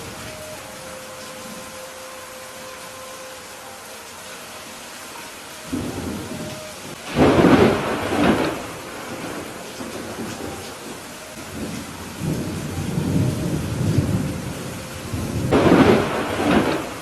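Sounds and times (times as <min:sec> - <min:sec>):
steady rain hissing: 0:00.0 - 0:17.0
thunder rumbling: 0:05.7 - 0:17.0.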